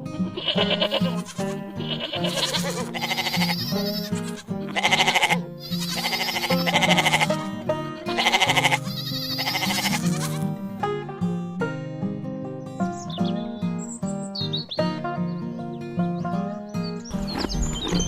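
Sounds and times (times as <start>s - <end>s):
background music: 0.0s - 18.0s
goats bleating: 0.3s - 10.6s.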